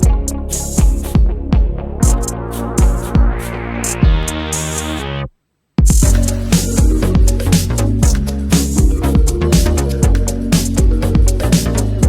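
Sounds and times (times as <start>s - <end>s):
drum machine beat: 0.0s - 5.0s, 5.8s - 12.0s
synthesizer chords: 0.0s - 5.3s, 6.0s - 12.0s.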